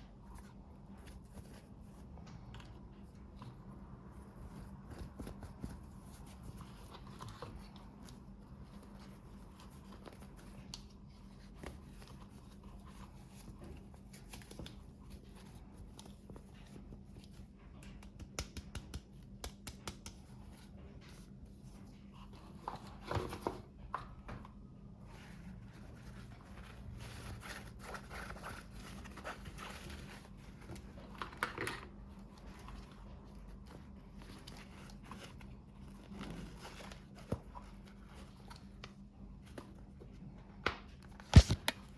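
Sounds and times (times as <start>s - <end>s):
plastic and paper rustling: 20.7s - 39.0s, 41.2s - 41.9s.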